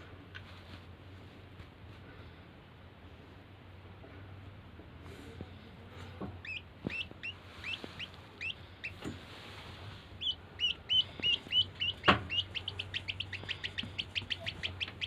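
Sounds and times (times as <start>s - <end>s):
baby bird chirping: 6.4s - 9.0s, 10.2s - 15.0s.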